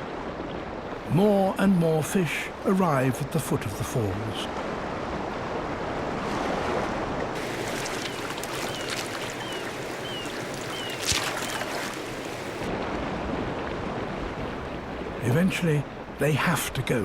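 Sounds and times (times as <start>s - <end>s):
bird chirping: 7.4s - 12.6s
sharp splash: 7.4s - 12.7s
waterfall rushing: 7.4s - 12.7s.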